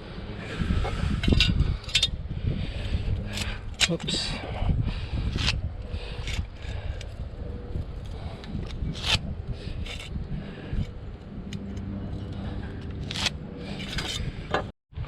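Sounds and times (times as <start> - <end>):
steady low rumble: 0.0 - 15.0
metal fasteners clicking and scraping: 1.2 - 2.2, 3.2 - 4.3, 8.0 - 10.1, 10.8 - 14.7.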